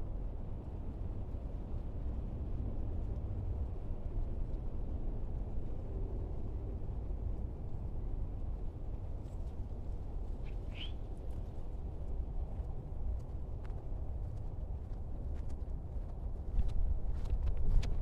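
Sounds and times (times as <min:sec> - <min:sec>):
wind buffeting microphone: 0:00.0 - 0:18.0
bird call rising in pitch: 0:10.5 - 0:11.0.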